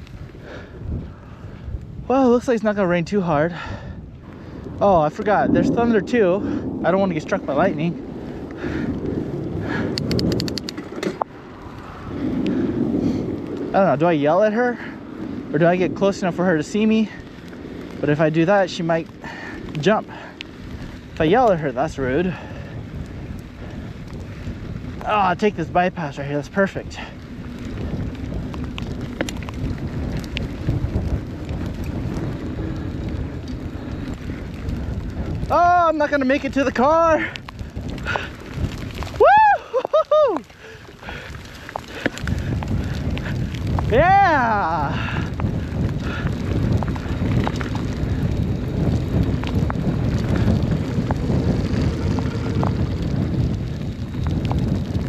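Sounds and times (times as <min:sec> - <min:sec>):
bike tyre noise on dirt: 0:00.0 - 0:55.0
wind on microphone: 0:00.0 - 0:55.0
sharp ticks: 0:09.7 - 0:11.3.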